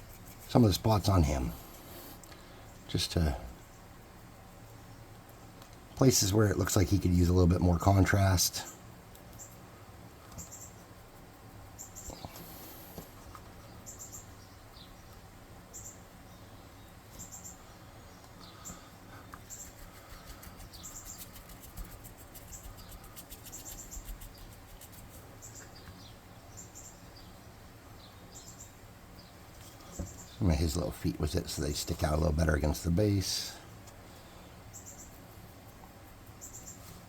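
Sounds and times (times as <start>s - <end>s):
paintbrush scratching: 0.0s - 1.1s, 19.4s - 25.3s.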